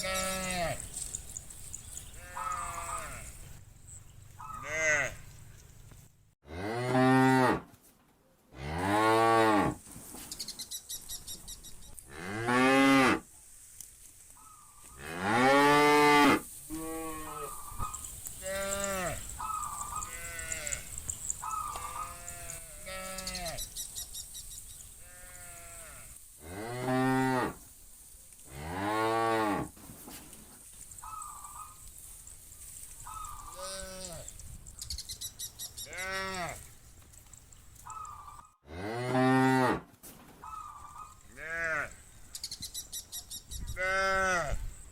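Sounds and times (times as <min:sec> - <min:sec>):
fainter higher cattle calls: 0:00.0 - 0:03.5, 0:04.4 - 0:05.4, 0:16.0 - 0:23.8, 0:33.0 - 0:34.4, 0:37.8 - 0:38.5.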